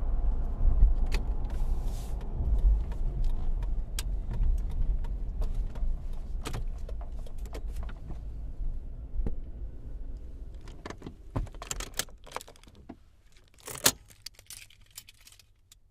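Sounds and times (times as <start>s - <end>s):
car engine and road rumble: 0.0s - 15.9s
clicks and rattles: 10.6s - 15.9s.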